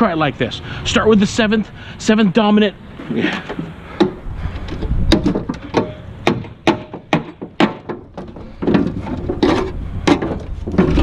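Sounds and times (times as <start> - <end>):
scrap metal knocking and clanking: 2.9 - 11.0.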